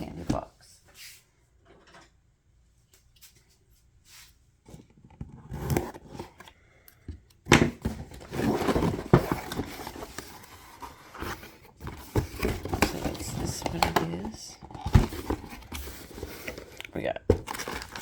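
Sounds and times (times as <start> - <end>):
packaging rustling and scraping: 4.7 - 6.5, 7.7 - 18.0.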